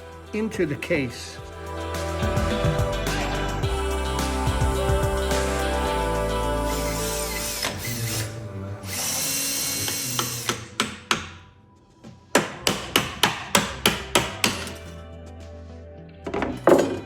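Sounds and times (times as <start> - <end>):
hammer striking wood: 10.2 - 11.4, 12.4 - 14.8.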